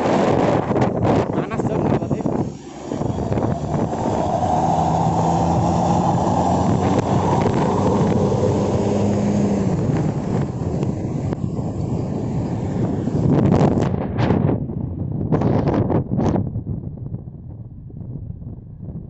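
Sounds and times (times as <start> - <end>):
bus diesel engine driving past: 1.6 - 13.8.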